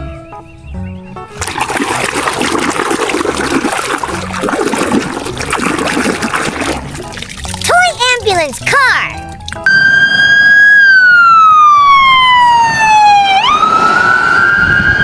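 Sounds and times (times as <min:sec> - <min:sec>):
background music: 0:00.0 - 0:09.8
water running and splashing: 0:01.3 - 0:09.7.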